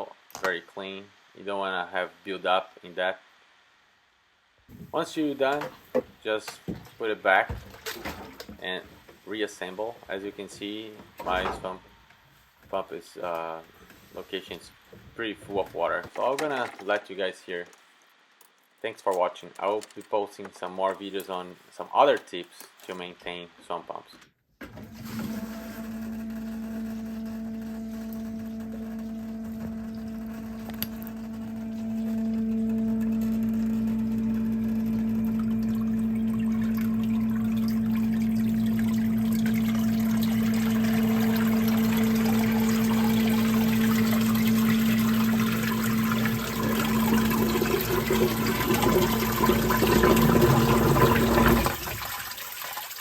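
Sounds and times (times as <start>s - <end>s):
sump pump motor hum: 24.6s - 53.0s
water trickling: 28.2s - 53.0s
water churning and gurgling: 31.3s - 53.0s.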